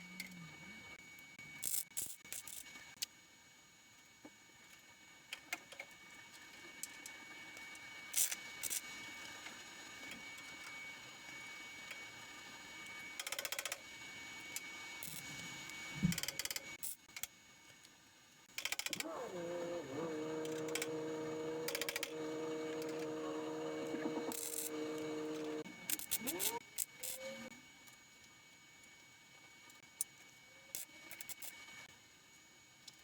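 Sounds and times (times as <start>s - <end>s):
rapid mechanical clicking: 18.5s - 27.2s.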